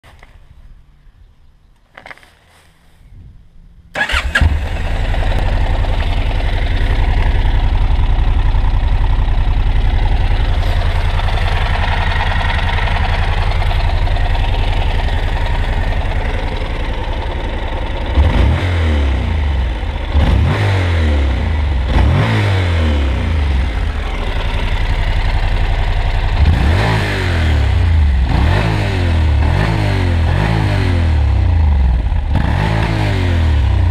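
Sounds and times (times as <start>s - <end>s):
motorcycle engine idling and revving: 3.9s - 33.9s.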